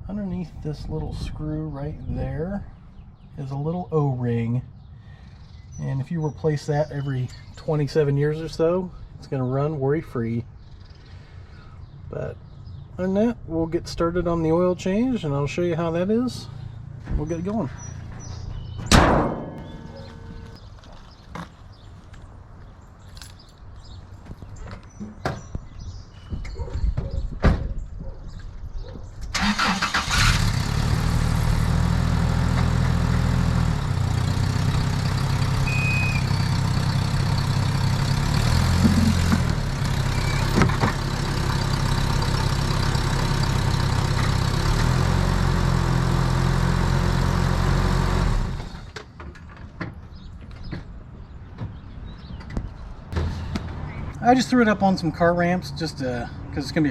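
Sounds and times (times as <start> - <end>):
pickup truck engine running: 29.5 - 49.0.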